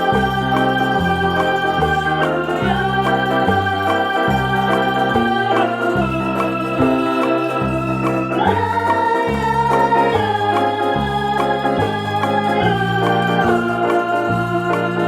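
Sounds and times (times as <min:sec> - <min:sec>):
electronic organ music: 0:00.0 - 0:15.0.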